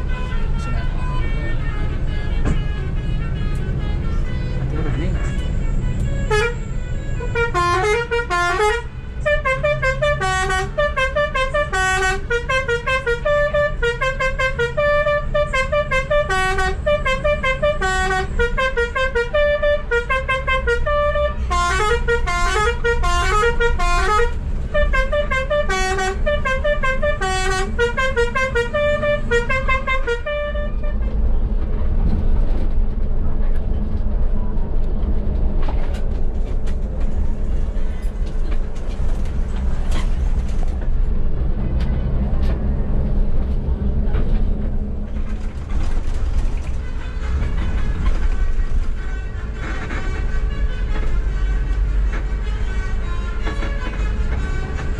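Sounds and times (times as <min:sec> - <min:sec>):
bus air horn playing tunes: 0:00.0 - 0:31.4, 0:45.8 - 0:54.9
bus engine rumble: 0:00.0 - 0:54.9.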